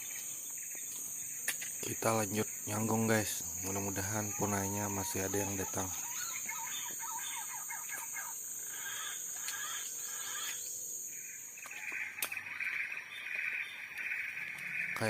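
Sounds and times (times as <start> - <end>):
bird chirps: 0.0 - 15.0
high insect drone: 0.0 - 15.0
shrill insect buzz: 0.0 - 15.0.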